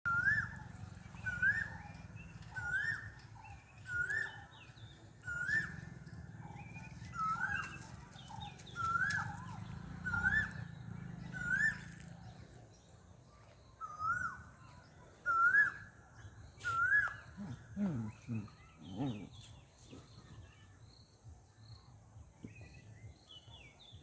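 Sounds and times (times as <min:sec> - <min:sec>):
bird calling: 0:00.1 - 0:12.2, 0:13.8 - 0:20.3.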